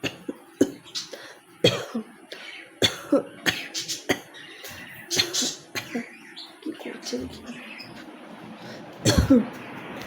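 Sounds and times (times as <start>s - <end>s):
woman coughing: 1.6s - 2.1s, 2.8s - 4.3s, 5.1s - 6.1s, 9.1s - 9.6s.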